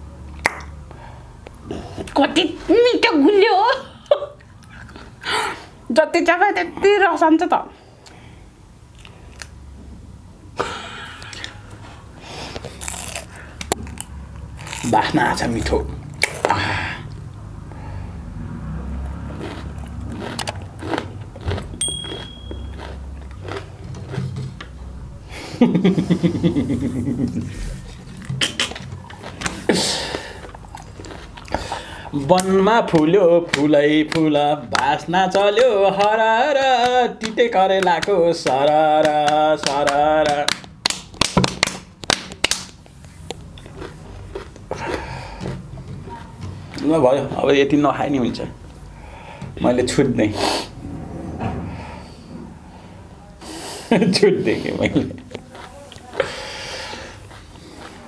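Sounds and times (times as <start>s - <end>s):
food chewing and crunching: 4.4s - 5.3s, 8.9s - 9.6s, 11.1s - 15.4s, 18.6s - 24.9s, 27.7s - 40.4s, 42.4s - 47.9s, 55.2s - 58.0s
close chewing clicks: 19.2s - 24.7s, 43.3s - 46.8s
high steady tone: 21.8s - 22.8s
mouth sounds: 26.0s - 40.5s.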